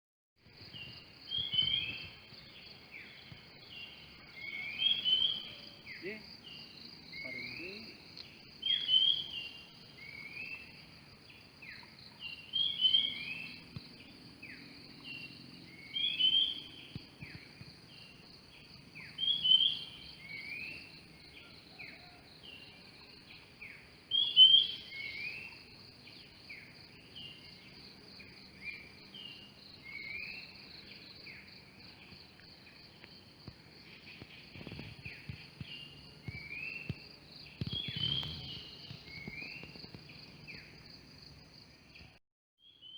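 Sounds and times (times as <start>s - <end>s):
bird singing whistled notes: 0.8s - 10.8s, 11.7s - 13.6s, 14.4s - 18.2s, 19.0s - 27.7s, 28.5s - 31.5s, 33.9s - 40.8s.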